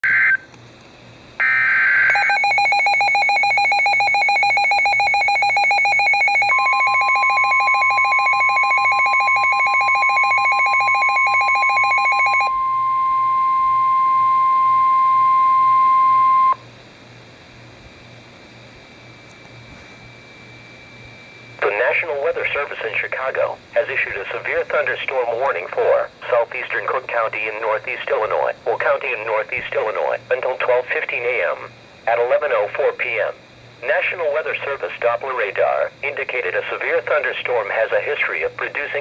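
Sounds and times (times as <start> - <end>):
rapidly pulsing beeping alarm: 0.0 - 0.5, 1.4 - 16.6
steady warning alarm tone: 0.0 - 0.5, 1.4 - 16.7, 18.9 - 39.0.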